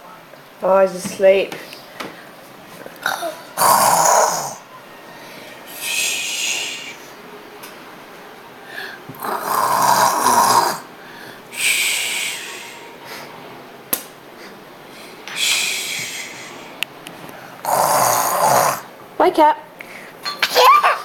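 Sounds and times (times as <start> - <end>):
person snoring: 3.0 - 4.6, 9.2 - 10.9, 17.6 - 18.9
breathy hiss out: 5.7 - 7.1, 8.7 - 13.3, 14.4 - 16.8.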